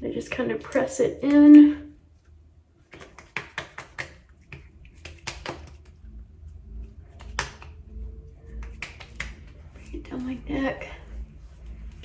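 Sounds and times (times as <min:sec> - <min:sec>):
fingertips patting skin: 0:02.8 - 0:06.0, 0:07.1 - 0:10.3.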